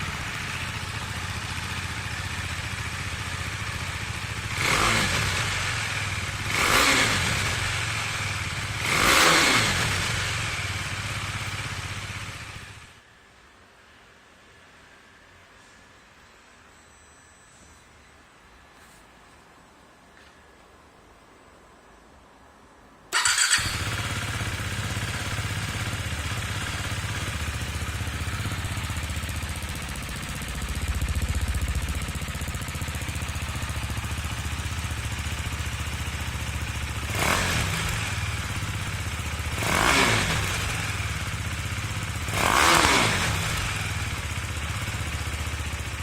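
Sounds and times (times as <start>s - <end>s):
motorcycle engine idling and revving: 0.0s - 13.1s, 23.2s - 46.0s.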